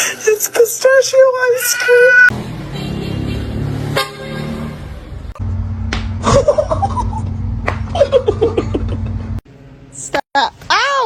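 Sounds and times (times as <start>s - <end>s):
steady low hum: 5.4s - 10.1s
sharp slaps: 5.9s - 6.2s, 7.6s - 7.9s
person laughing: 6.2s - 9.3s.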